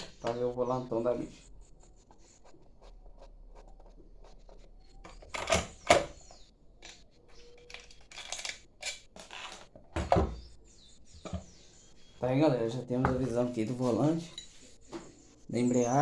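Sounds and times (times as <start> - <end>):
tools clicking and scraping: 6.8 - 9.7.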